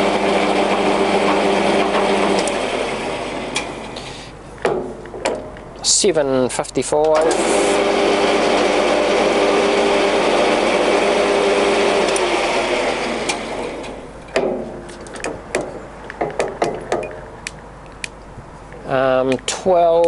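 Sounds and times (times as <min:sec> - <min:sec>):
lathe motor whining: 0:00.0 - 0:04.4, 0:07.1 - 0:16.1
sharp clicks and knocks: 0:03.5 - 0:04.0, 0:04.6 - 0:05.8, 0:13.2 - 0:20.0.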